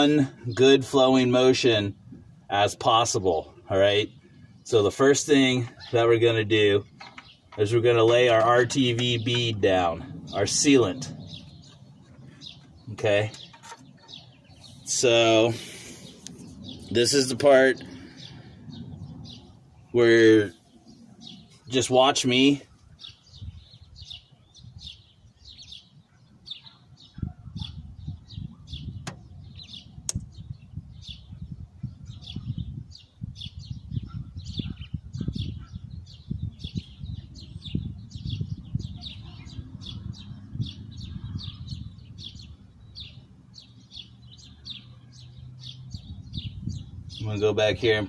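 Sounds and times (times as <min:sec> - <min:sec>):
bird chirping: 0:00.0 - 0:48.0
low rumble: 0:15.6 - 0:20.0
sharp clicks: 0:30.1 - 0:30.3.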